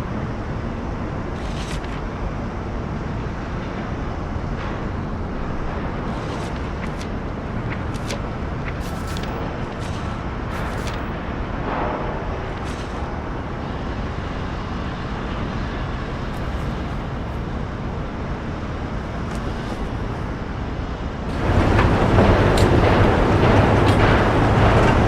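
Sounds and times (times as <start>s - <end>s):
steady rushing noise: 0.0s - 25.0s.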